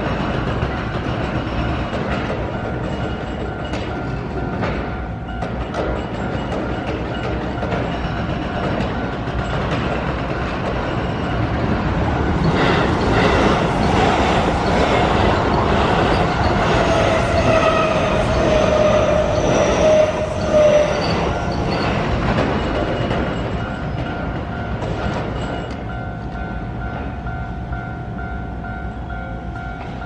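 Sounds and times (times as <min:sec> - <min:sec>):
crossing warning bell: 0:00.0 - 0:30.0
train rumbling past: 0:00.0 - 0:30.0
high wheel squeal: 0:12.4 - 0:24.1.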